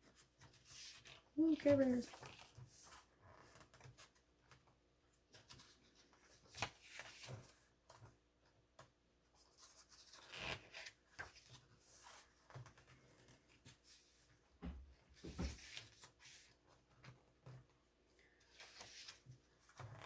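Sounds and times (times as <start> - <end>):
paper pages rustling: 18.4 - 20.0.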